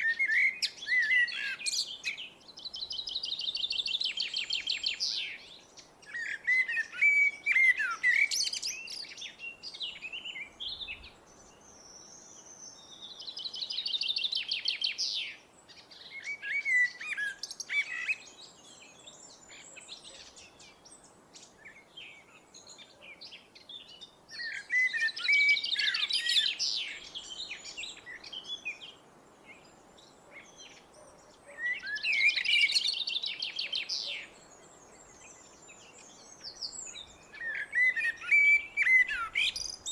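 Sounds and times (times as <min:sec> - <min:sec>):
blackbird singing: 0:00.0 - 0:39.9.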